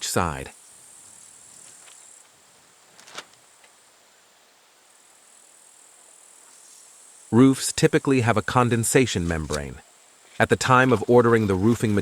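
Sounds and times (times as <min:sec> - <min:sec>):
faint crickets trilling: 0:00.0 - 0:12.0.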